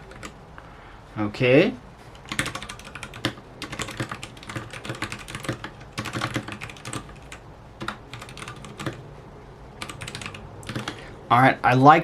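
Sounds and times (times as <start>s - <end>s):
mechanical keyboard typing: 0.0s - 0.4s, 2.2s - 9.0s, 9.8s - 11.0s.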